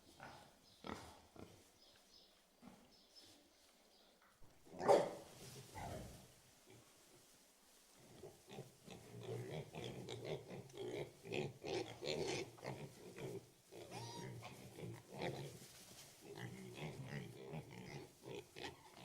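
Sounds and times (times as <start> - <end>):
pigs grunting and squealing: 8.2 - 15.6, 16.2 - 19.0.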